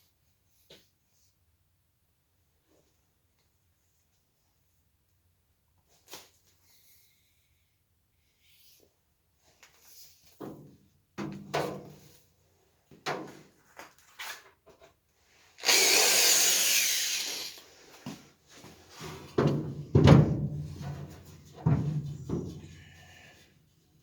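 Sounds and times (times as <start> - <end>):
power tool burst: 15.6 - 17.6
knocks and handling of wood: 18.1 - 23.2.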